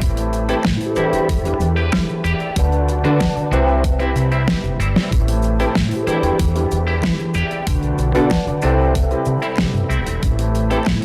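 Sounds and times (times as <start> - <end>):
beat-driven music with bass: 0.0 - 11.0.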